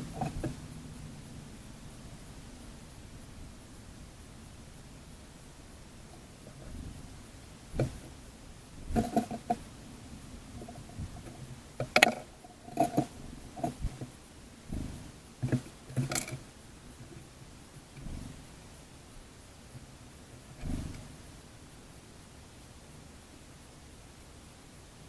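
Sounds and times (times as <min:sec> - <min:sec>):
beaks tapping on bird feeder: 0:10.6 - 0:14.1.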